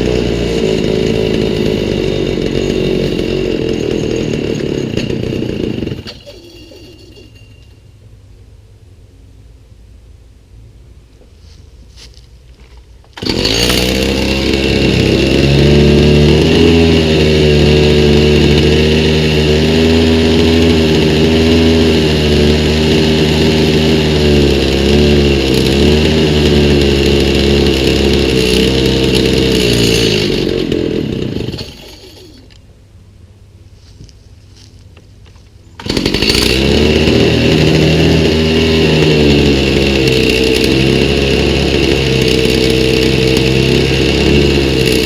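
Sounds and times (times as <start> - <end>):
chainsaw engine running: 0.0 - 7.7, 13.2 - 32.6, 35.8 - 45.0.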